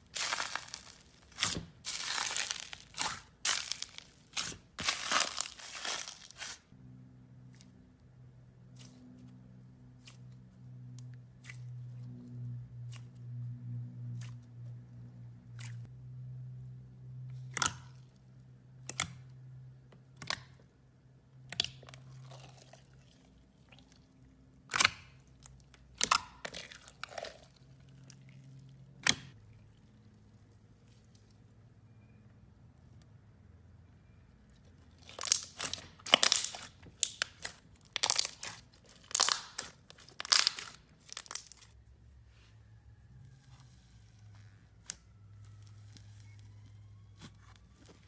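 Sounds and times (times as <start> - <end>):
slime popping and crackling: 0.0 - 6.6, 35.0 - 41.8.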